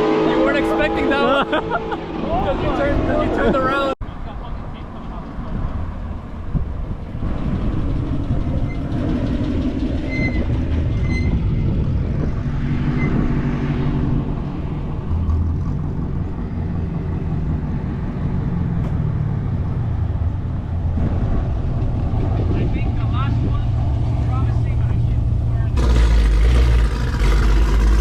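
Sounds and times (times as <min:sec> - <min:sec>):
car engine revving: 0:00.0 - 0:04.0, 0:07.2 - 0:28.0.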